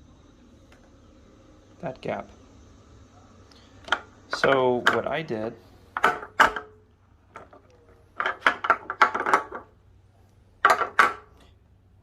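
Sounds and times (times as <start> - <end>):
plastic parts clicking and clattering: 6.0 - 9.7, 10.6 - 11.5.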